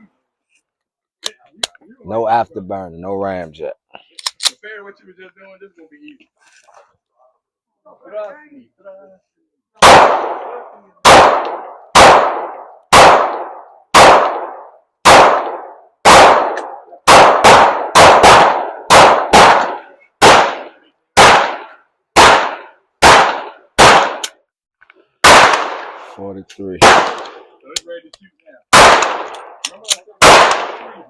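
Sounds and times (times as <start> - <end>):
pistol shots: 9.8 - 24.4, 25.2 - 26.1, 26.8 - 27.5, 28.7 - 31.0.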